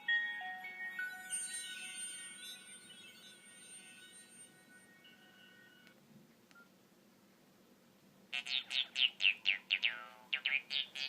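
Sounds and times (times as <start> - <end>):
electronic chime ringtone: 0.0 - 6.0.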